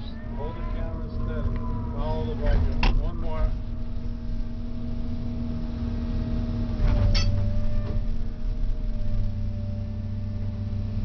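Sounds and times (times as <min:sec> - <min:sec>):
excavator diesel engine humming: 0:00.0 - 0:11.0
sharp metal clank: 0:07.0 - 0:07.4.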